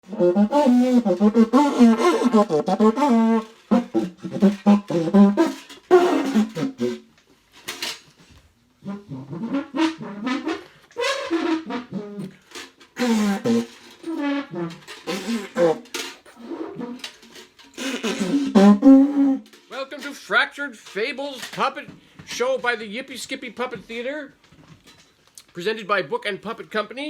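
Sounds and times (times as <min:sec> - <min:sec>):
brassy instrumental melody: 0:00.0 - 0:07.9, 0:08.8 - 0:20.1.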